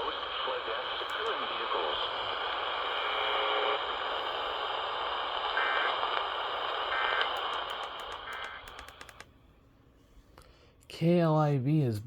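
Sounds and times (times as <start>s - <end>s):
radio static hiss: 0.0s - 9.2s.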